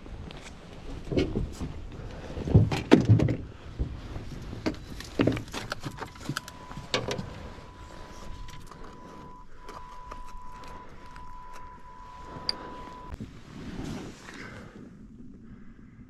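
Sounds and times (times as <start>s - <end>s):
knocks and thumps: 2.4s - 5.5s
thin high tone: 6.4s - 13.2s.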